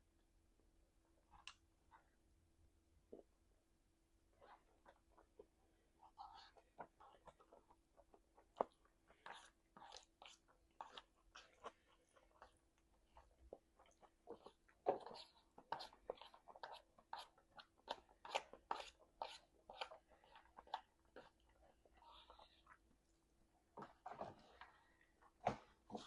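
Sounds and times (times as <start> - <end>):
person chewing food: 4.4 - 22.9.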